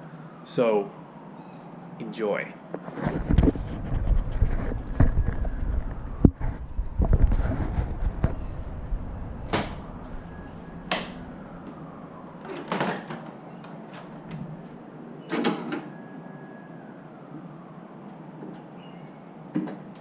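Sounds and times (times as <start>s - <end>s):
low rumble: 3.0s - 12.5s.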